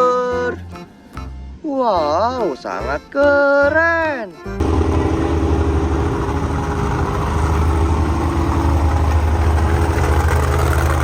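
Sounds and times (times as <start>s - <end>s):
truck engine idling: 4.4s - 11.0s.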